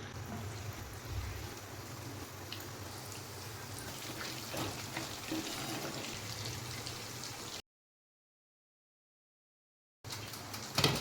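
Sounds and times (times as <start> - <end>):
chicken sizzling in hot oil: 0.0 - 7.6.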